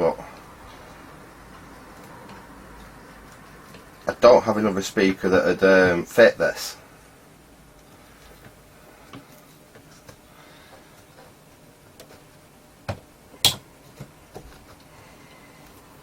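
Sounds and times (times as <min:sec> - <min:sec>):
hands tapping thin metal frame: 0:12.9 - 0:13.7
sharp knocks: 0:12.9 - 0:13.7.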